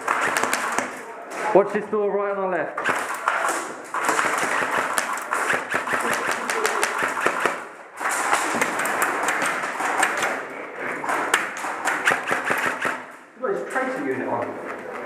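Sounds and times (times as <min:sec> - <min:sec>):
airsoft guns firing full-auto: 0:00.0 - 0:01.1, 0:02.8 - 0:13.2
bb impacts: 0:02.8 - 0:12.9.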